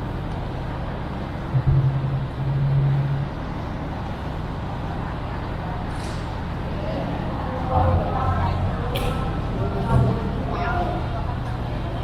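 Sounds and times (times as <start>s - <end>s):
loud low hum: 0.0s - 12.0s
steady low rumble: 0.0s - 12.0s.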